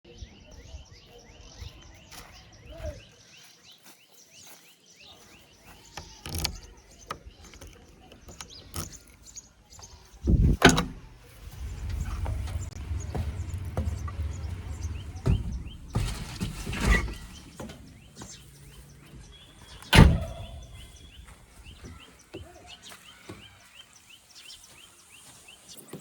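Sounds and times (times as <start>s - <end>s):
low engine rumble: 10.2s - 21.8s
loud thud: 10.4s - 17.6s.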